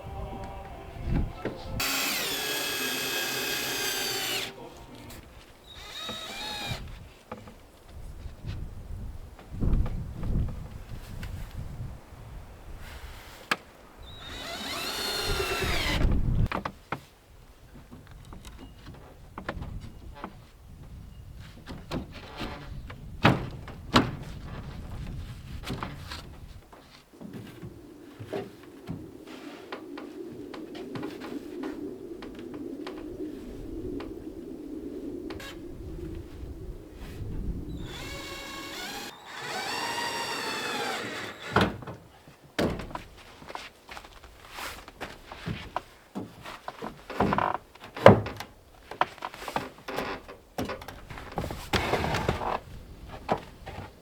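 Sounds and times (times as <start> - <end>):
drawn-out creak: 1.8 - 4.6, 5.6 - 6.9, 14.0 - 16.2, 37.7 - 42.0.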